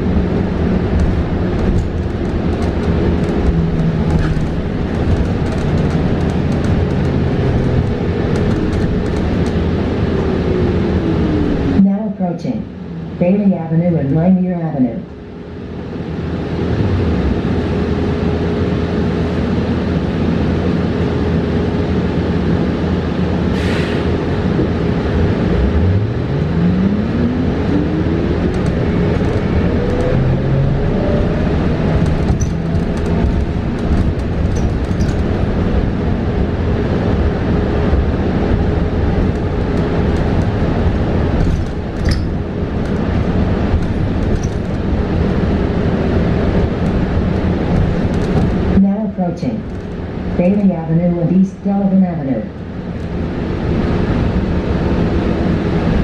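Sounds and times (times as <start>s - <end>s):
constant hum: 0.0s - 23.5s, 24.1s - 56.0s
road and tyre rumble: 0.0s - 56.0s
light rattles and clicks: 0.9s - 9.7s, 28.5s - 30.3s, 31.9s - 35.8s, 39.2s - 45.5s, 46.5s - 48.7s.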